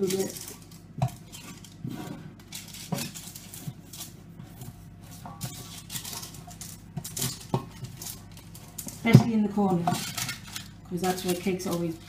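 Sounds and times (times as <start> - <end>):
fingers rubbing inside cake tin: 9.3 - 12.0.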